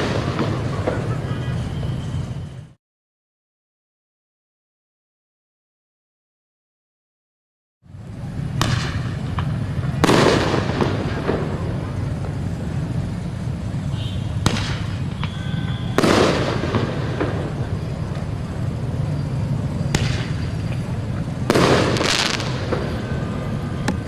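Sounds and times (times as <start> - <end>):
fireworks bangs: 0.0 - 2.7, 8.2 - 24.0
fireworks crackling: 0.0 - 2.8, 7.9 - 24.0.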